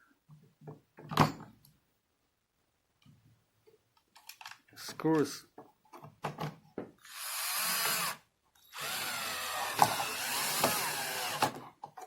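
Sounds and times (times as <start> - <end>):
cordless drill driving screws: 7.0 - 11.6.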